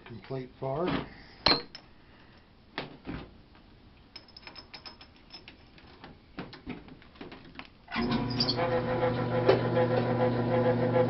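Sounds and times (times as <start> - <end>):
metal clicks and clinks: 4.1 - 5.9.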